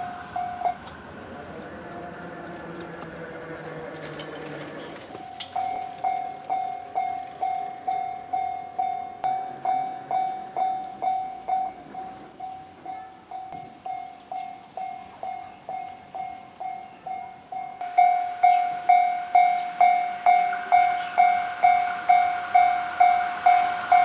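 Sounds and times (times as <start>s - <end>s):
level crossing warning bell: 0.0s - 0.9s, 4.1s - 24.0s
electric train motor whine: 0.0s - 11.5s, 17.9s - 24.0s.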